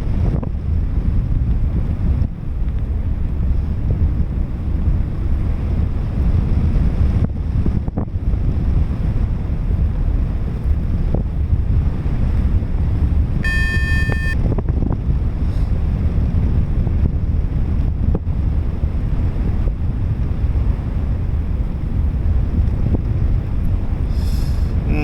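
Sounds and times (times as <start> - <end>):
strong wind buffeting microphone: 0.0 - 25.0
electronic beep: 13.4 - 14.4.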